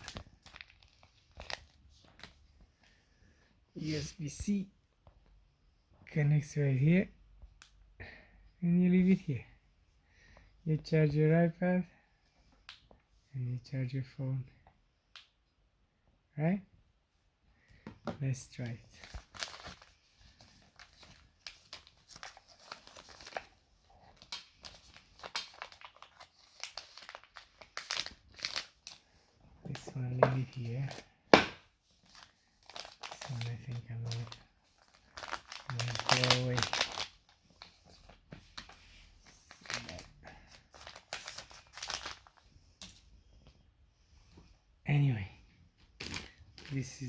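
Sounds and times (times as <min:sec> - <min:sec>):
plastic crinkling and rustling: 0:00.0 - 0:02.6, 0:18.3 - 0:43.0, 0:45.8 - 0:47.0.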